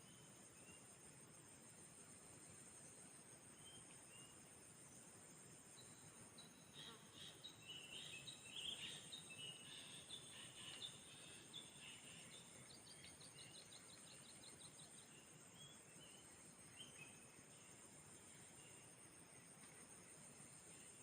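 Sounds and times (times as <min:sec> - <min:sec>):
high insect drone: 0:00.0 - 0:21.0
birds chirping: 0:06.5 - 0:17.3.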